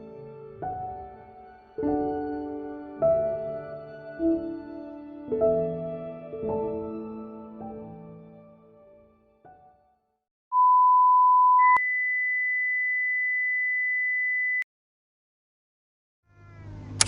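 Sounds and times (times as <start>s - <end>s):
background music: 0.0s - 9.5s
electronic beep tone: 10.5s - 11.9s.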